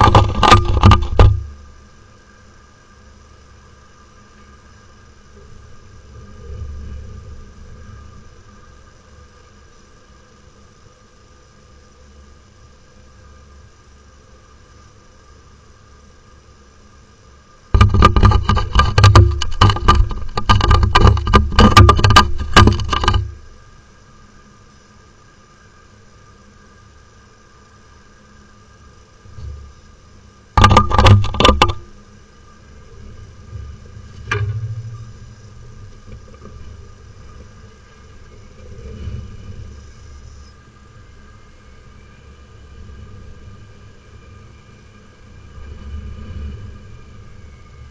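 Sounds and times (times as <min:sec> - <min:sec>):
bird knocking on camera housing: 0:00.0 - 0:01.4, 0:17.8 - 0:23.4, 0:30.6 - 0:31.8
low outdoor rumble: 0:00.0 - 0:47.9.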